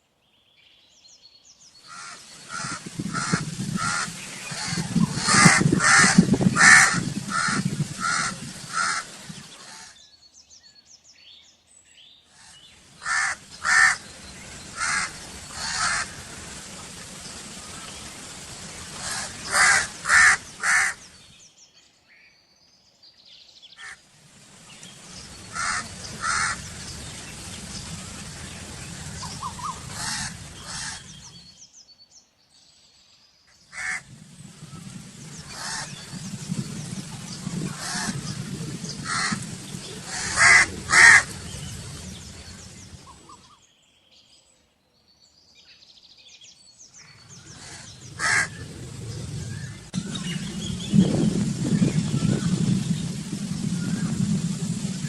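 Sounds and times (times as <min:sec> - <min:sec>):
outdoor background noise: 0:00.0 - 0:55.0
crows cawing: 0:01.9 - 0:10.0, 0:12.4 - 0:16.7, 0:18.9 - 0:21.0, 0:25.2 - 0:26.8, 0:29.1 - 0:31.2, 0:33.8 - 0:34.0, 0:35.5 - 0:36.0, 0:37.7 - 0:38.3, 0:39.0 - 0:41.4, 0:47.6 - 0:48.6.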